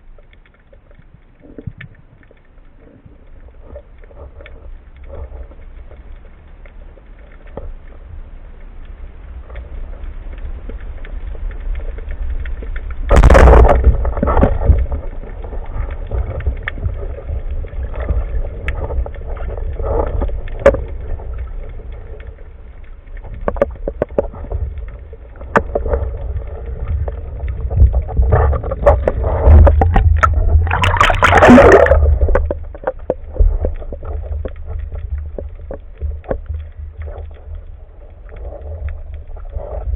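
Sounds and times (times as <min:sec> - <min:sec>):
small underwater clicks: 0:00.0 - 0:39.9
underwater water rumble: 0:00.0 - 0:39.9
rushing gurgling water: 0:09.4 - 0:39.9.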